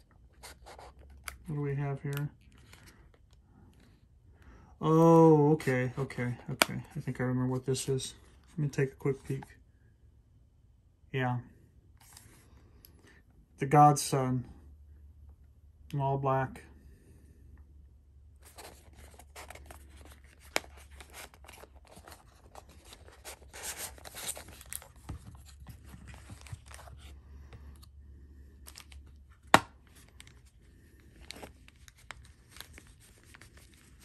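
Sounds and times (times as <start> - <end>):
packaging rustling and tearing: 18.4 - 27.1, 28.7 - 34.0.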